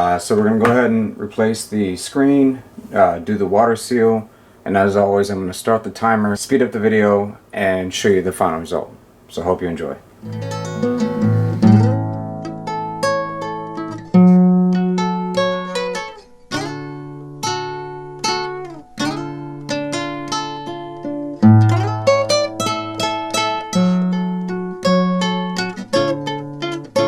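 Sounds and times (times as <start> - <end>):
acoustic guitar melody: 10.1 - 27.0
bass line: 10.2 - 12.0.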